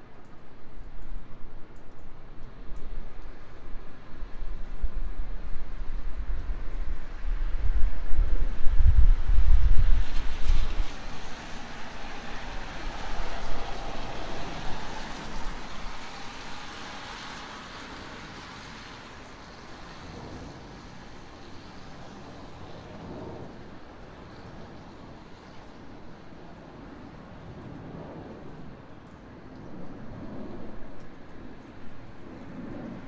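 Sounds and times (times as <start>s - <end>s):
airliner passing overhead: 3.2s - 33.0s
wind buffeting microphone: 3.8s - 17.0s
city hum: 8.4s - 33.0s.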